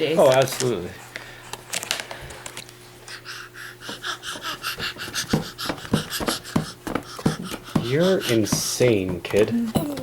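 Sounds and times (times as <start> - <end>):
baby panting rapidly: 3.1 - 10.0.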